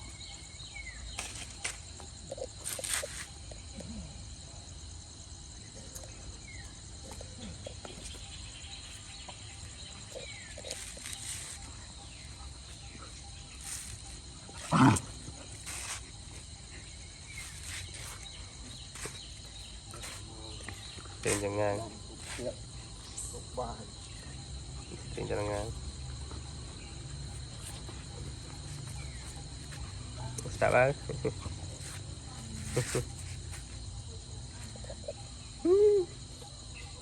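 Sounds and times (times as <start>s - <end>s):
insects droning: 0.0s - 37.0s.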